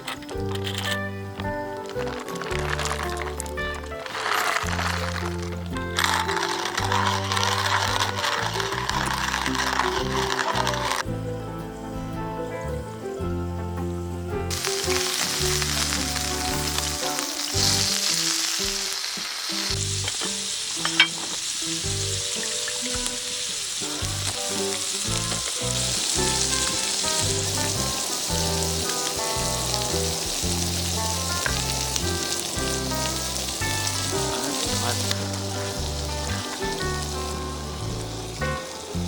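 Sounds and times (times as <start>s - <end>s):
background music: 0.0s - 39.0s
food sizzling: 0.0s - 39.0s.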